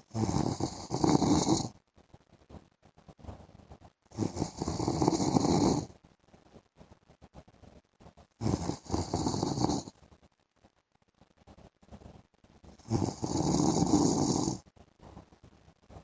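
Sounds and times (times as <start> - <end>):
man snoring: 0.1 - 1.7, 4.2 - 5.9, 8.4 - 9.9, 12.8 - 14.6.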